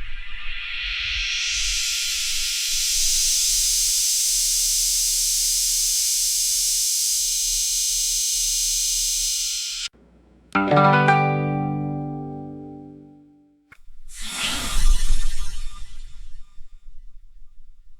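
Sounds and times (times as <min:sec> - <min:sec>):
loud high-pitched hiss: 0:00.3 - 0:09.9, 0:14.0 - 0:16.7.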